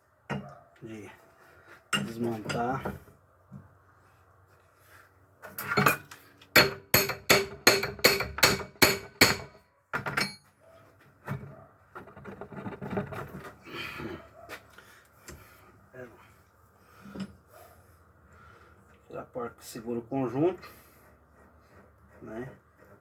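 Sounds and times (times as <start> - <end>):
hammer striking metal: 6.6 - 9.6.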